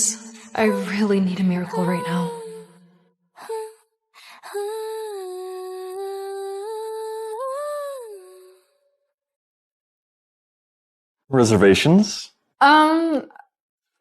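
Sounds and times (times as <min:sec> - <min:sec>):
person humming a tune: 0:00.0 - 0:02.7, 0:04.5 - 0:08.6.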